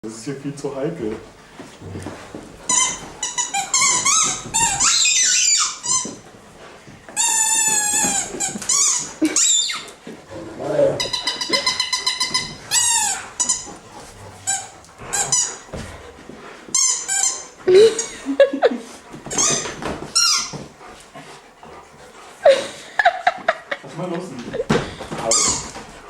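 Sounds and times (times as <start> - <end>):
squeaky toy squeaking: 2.7 - 6.2, 7.2 - 9.9, 11.0 - 13.7, 16.8 - 18.1, 19.3 - 20.6.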